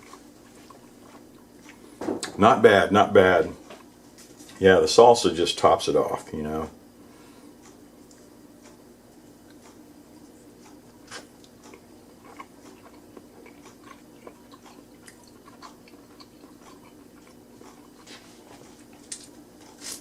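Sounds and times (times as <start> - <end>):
person chewing food: 0.0 - 2.3, 7.4 - 20.0
steady low hum: 0.0 - 20.0.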